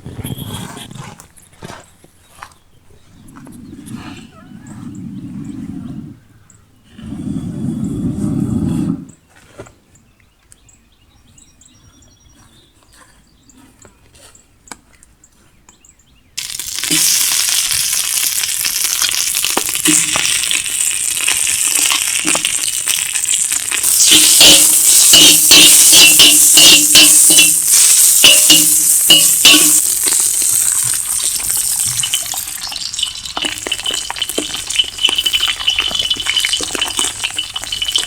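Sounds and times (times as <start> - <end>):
food sizzling in hot oil: 16.4 - 38.0
stirring clicks and scrapes: 16.4 - 38.0.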